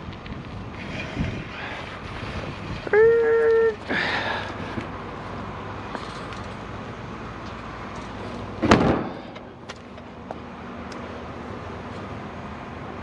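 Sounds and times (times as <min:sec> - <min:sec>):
outdoor background noise: 0:00.0 - 0:13.0
loud deep thump: 0:08.6 - 0:09.2.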